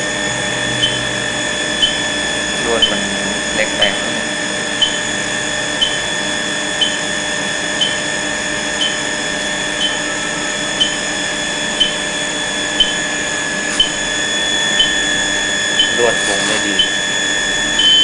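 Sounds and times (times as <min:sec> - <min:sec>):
brazing machine humming: 0:00.0 - 0:18.0
high whining tones: 0:00.0 - 0:18.0
short timer blips: 0:00.8 - 0:01.1, 0:01.8 - 0:02.1, 0:02.8 - 0:03.2, 0:04.8 - 0:05.0, 0:05.8 - 0:06.0, 0:07.8 - 0:08.0, 0:08.8 - 0:09.0, 0:12.8 - 0:13.0, 0:13.7 - 0:14.0.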